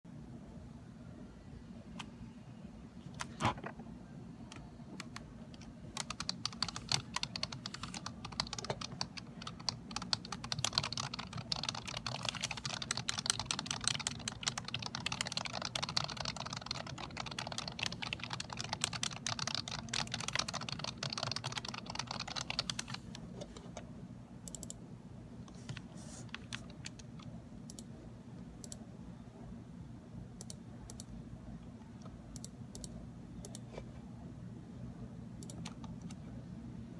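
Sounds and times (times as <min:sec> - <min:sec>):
low steady hum: 0:00.1 - 0:36.9
fast typing on keyboard: 0:05.0 - 0:23.1.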